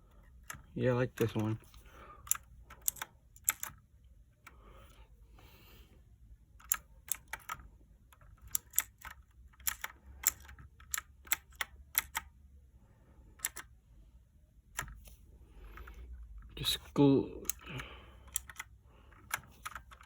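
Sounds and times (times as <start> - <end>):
mechanical keyboard key clicks: 2.2 - 3.8, 6.6 - 7.6, 8.4 - 12.3, 13.4 - 13.7, 17.4 - 20.0.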